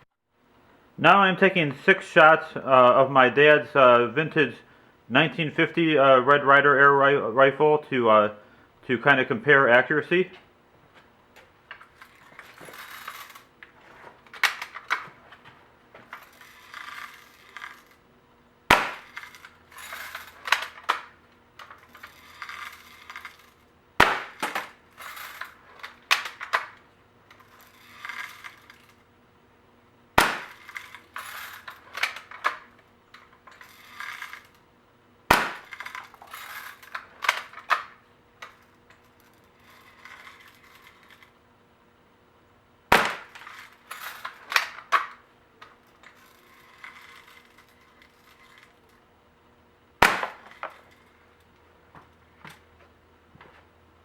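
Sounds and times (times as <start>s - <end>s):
bb gun shots: 18.7s - 19.4s, 24.0s - 24.7s, 30.2s - 30.8s, 35.3s - 36.0s, 42.9s - 43.6s, 50.0s - 50.7s.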